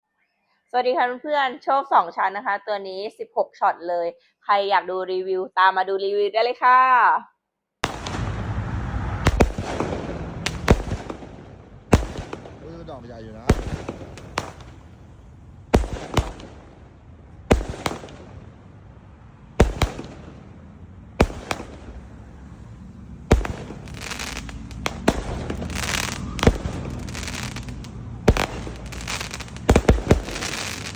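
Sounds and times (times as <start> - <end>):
crackling fireworks shells: 7.8 - 18.6, 19.5 - 30.9
fireworks bangs: 7.8 - 30.9.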